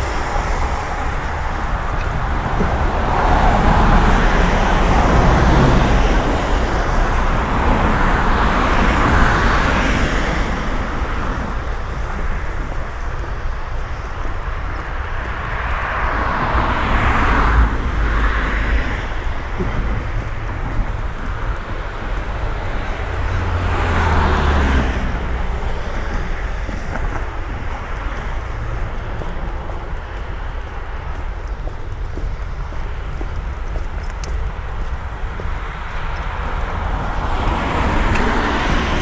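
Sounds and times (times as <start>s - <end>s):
car tyres hissing on wet street: 0.0s - 39.0s.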